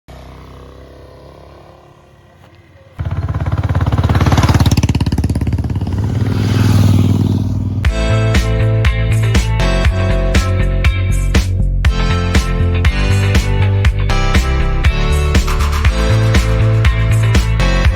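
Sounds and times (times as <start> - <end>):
motorcycle engine revving: 0.1 - 8.3
music: 7.8 - 17.9.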